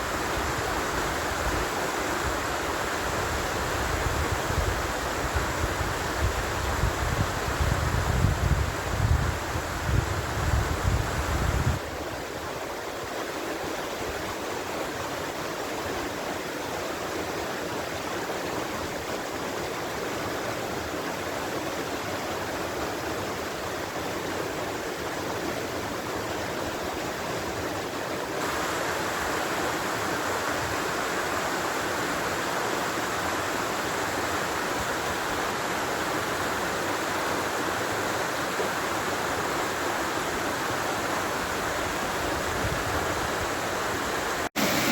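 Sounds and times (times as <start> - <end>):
stream rushing: 0.0 - 44.9
wind on microphone: 3.0 - 12.0, 41.4 - 44.9.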